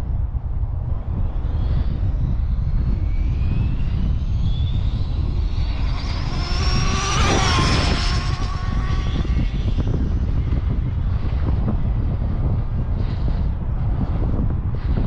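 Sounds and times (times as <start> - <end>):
wind rumble on microphone: 0.0 - 15.0
electric motor whine: 1.2 - 11.3.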